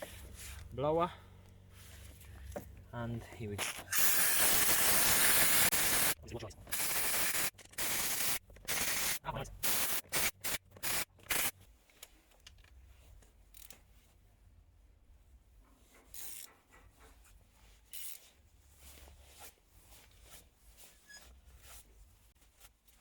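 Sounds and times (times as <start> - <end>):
hissy bursts: 3.6 - 11.5.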